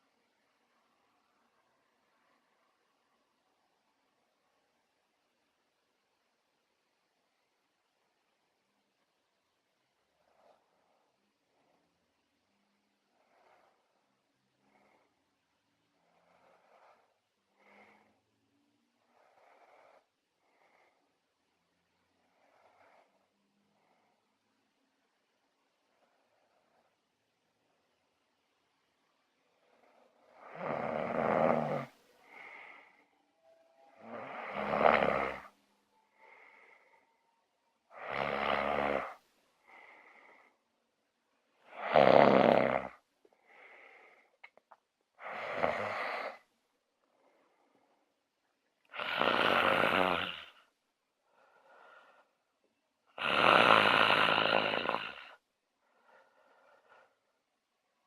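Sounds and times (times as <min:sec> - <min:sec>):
quiet breath: 0:00.0 - 0:42.1, 0:42.8 - 0:53.2, 0:54.2 - 0:58.0
person snoring: 0:29.8 - 0:33.0, 0:33.9 - 0:35.6, 0:37.9 - 0:40.4, 0:41.7 - 0:44.1, 0:45.2 - 0:46.4, 0:48.9 - 0:50.6, 0:53.2 - 0:55.4.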